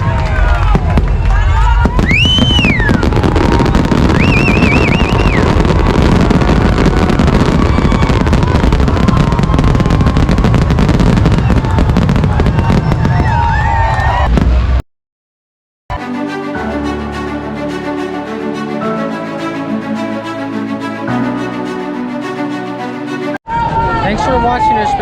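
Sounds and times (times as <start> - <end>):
fireworks banging and crackling: 0.0 - 14.8
firework whistles: 2.0 - 14.2.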